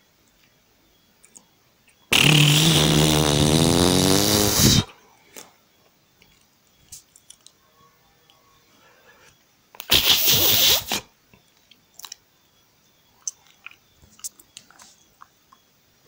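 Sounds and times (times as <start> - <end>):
buzzy rasping tone: 2.1 - 4.9.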